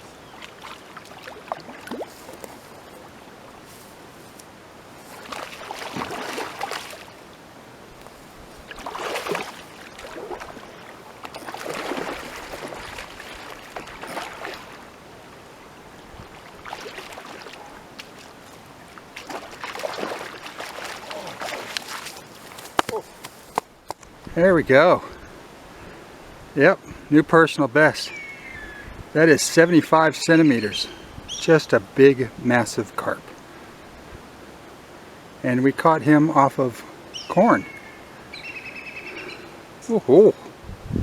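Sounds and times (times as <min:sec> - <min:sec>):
fish splashing and thrashing: 0:05.1 - 0:07.2, 0:08.6 - 0:14.9, 0:16.2 - 0:23.6.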